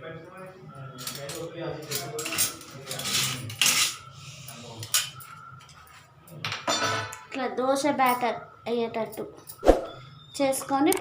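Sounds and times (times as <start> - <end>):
utensil scraping and clinking bowl: 1.1 - 6.1.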